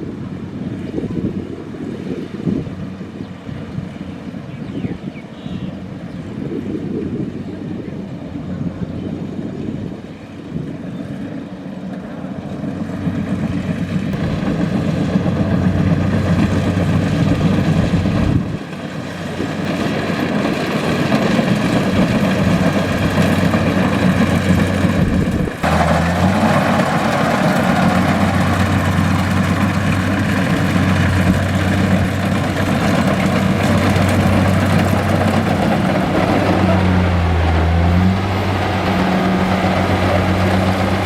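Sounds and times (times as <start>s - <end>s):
combine harvester diesel engine: 0.0s - 41.0s
loud rushing noise: 12.8s - 41.0s.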